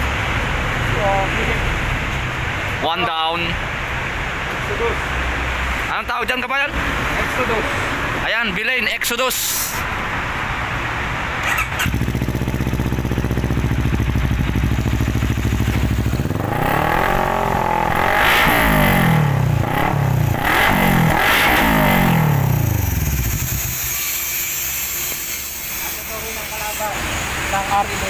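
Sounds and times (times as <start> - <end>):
motorcycle engine idling and revving: 10.4 - 28.0.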